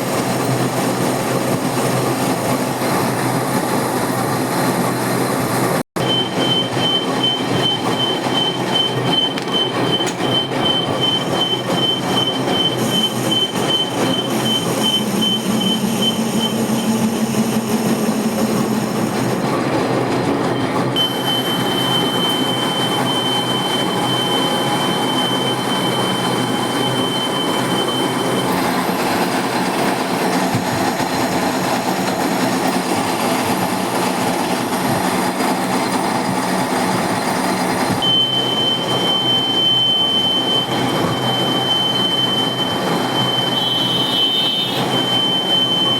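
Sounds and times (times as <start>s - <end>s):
metal lathe cutting steel: 6.0s - 45.9s
high-pitched tool squeal: 38.0s - 45.9s.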